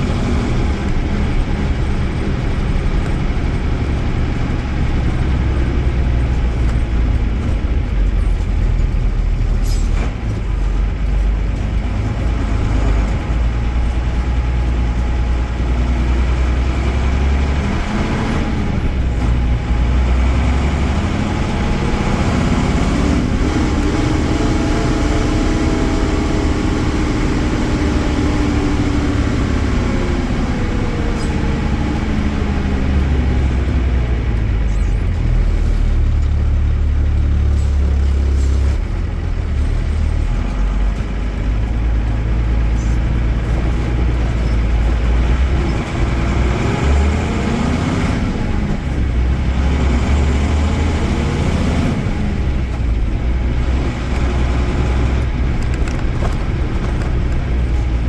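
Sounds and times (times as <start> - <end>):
bus diesel engine rumble: 0.0 - 58.0.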